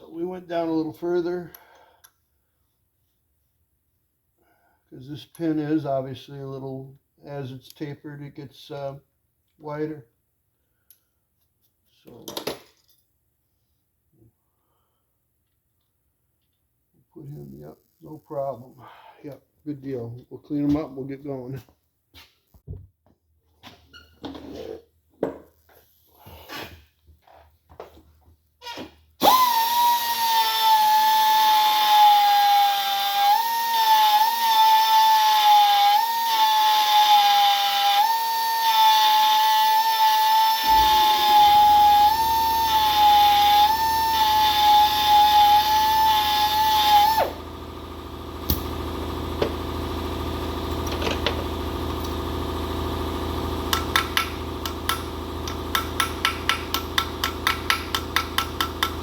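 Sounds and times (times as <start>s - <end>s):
high-speed grinder whining: 29.2s - 59.0s.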